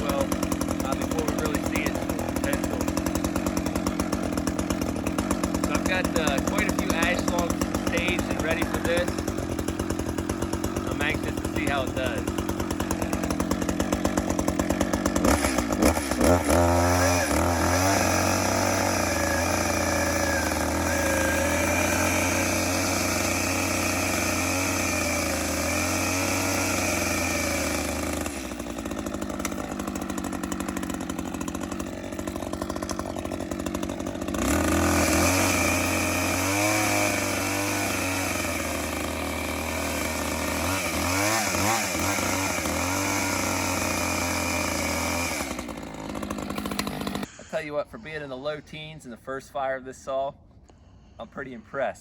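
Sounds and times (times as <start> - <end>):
chainsaw revving with high whine: 0.0 - 47.4.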